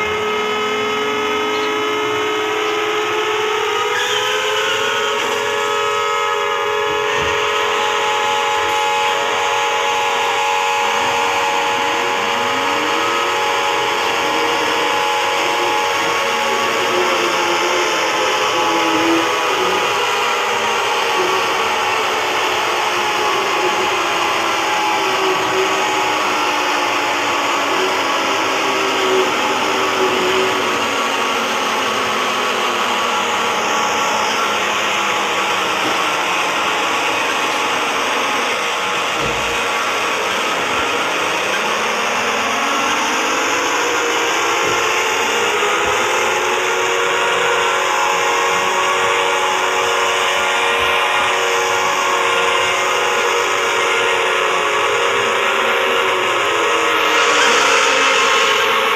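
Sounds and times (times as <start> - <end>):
harsh electronic alarm drone: 0.0 - 58.9.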